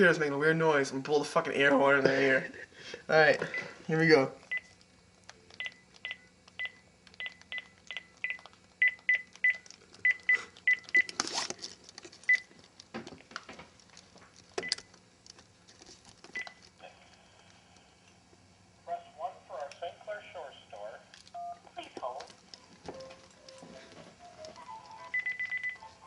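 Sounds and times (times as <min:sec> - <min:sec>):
phone keypad beeps: 0:05.6 - 0:11.1, 0:25.1 - 0:25.9.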